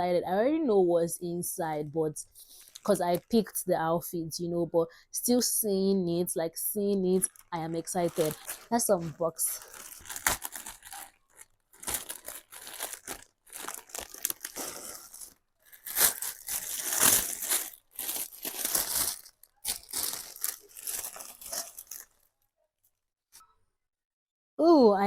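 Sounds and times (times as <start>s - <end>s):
packaging crinkling and tearing: 2.5s - 3.0s, 7.2s - 8.8s, 9.4s - 22.3s.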